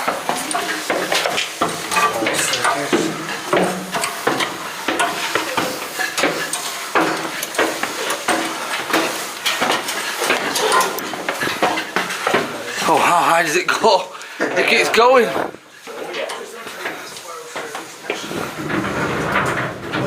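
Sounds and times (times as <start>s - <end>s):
sharp clicks and knocks: 0.0s - 12.6s
scraping and rustling: 0.0s - 13.8s, 14.4s - 20.0s.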